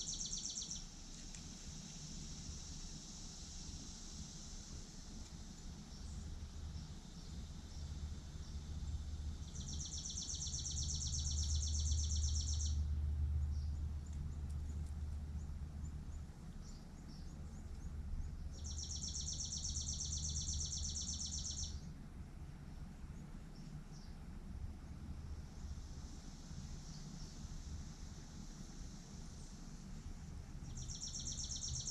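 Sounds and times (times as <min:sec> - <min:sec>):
bird chirps: 0:00.0 - 0:00.9, 0:09.4 - 0:12.8, 0:15.8 - 0:21.9, 0:30.6 - 0:31.9
songbird trilling: 0:00.0 - 0:00.9, 0:09.4 - 0:12.8, 0:16.6 - 0:21.9, 0:30.6 - 0:31.9.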